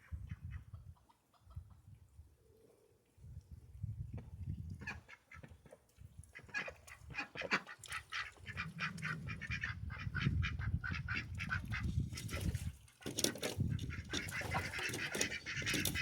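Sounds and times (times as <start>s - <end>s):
ducks and geese honking and quacking: 6.3s - 16.0s.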